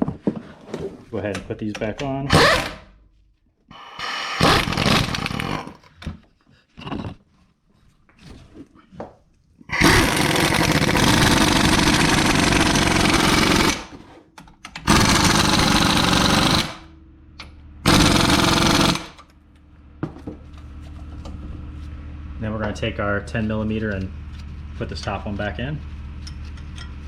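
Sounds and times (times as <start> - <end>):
impact wrench rattling: 2.3 - 2.9, 4.4 - 5.7, 9.8 - 16.9, 17.9 - 19.3.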